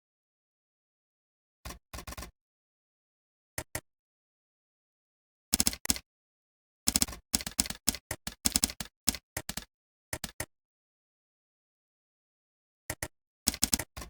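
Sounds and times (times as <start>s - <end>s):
typing on computer keyboard: 5.6s - 6.0s, 6.9s - 10.5s, 12.9s - 14.0s.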